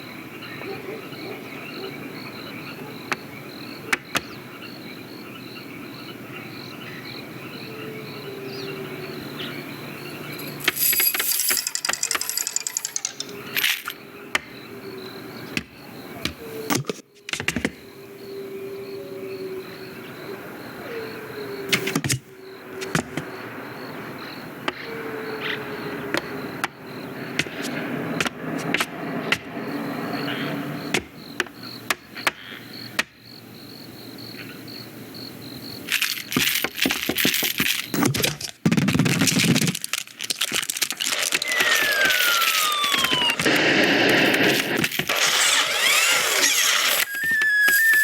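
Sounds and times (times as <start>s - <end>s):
cartoon clicks knocks and clatters: 11.4s - 14.5s
loud clattering jumble: 38.7s - 47.0s
short sliding tones: 41.2s - 48.0s.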